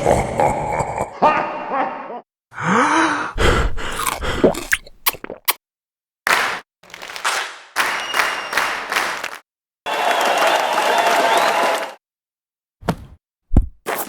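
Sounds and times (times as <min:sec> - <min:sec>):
comedic voice groans and grunts: 0:00.0 - 0:04.9.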